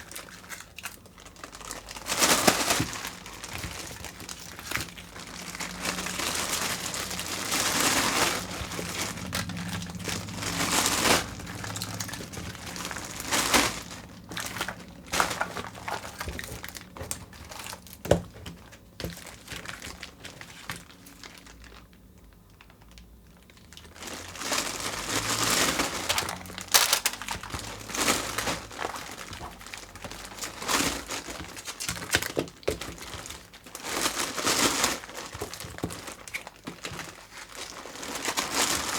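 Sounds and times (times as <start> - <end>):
wrappers crinkling and tearing: 0.0 - 38.9.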